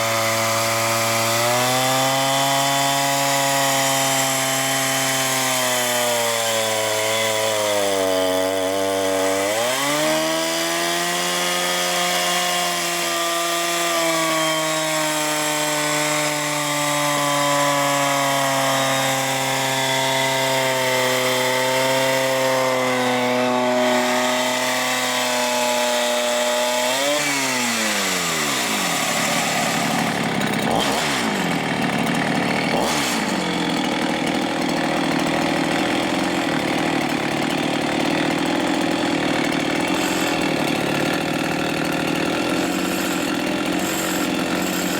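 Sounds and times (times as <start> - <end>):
chainsaw engine running hard: 0.0 - 44.9.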